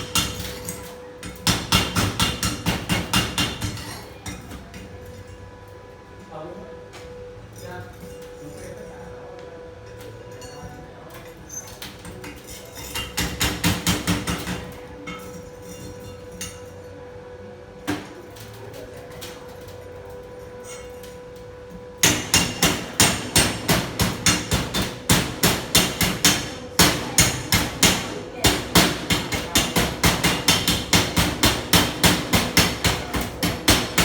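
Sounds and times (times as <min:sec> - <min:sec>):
hammer striking metal: 0:00.0 - 0:04.5, 0:12.3 - 0:16.6, 0:22.0 - 0:34.0.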